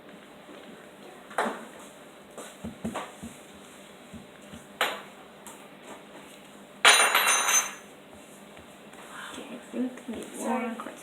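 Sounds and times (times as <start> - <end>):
spatula knocking against mixing bowl: 2.6 - 3.4, 4.1 - 5.0.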